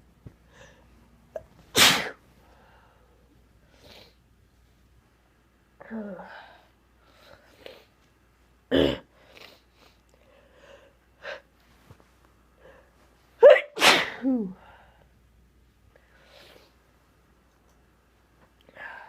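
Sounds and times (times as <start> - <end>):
person sneezing: 1.7 - 2.2, 13.4 - 14.6.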